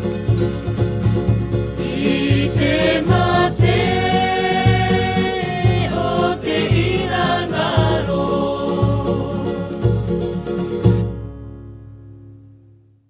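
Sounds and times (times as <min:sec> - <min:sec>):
singing voices over bass beat: 0:01.8 - 0:10.1.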